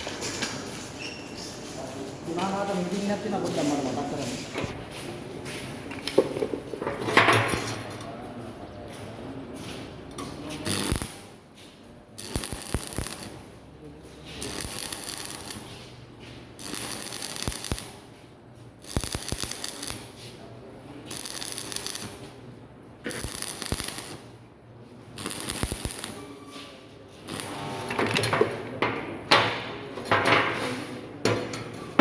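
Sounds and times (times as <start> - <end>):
arc welder crackling and hissing: 0.0 - 4.9, 10.2 - 11.4, 12.1 - 24.4, 25.0 - 26.2, 27.2 - 28.6.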